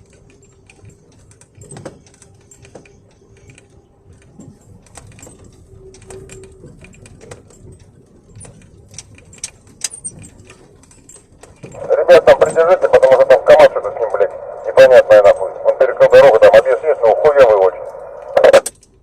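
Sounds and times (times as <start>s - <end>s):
truck cab creaking and squeaking: 0.0s - 12.7s.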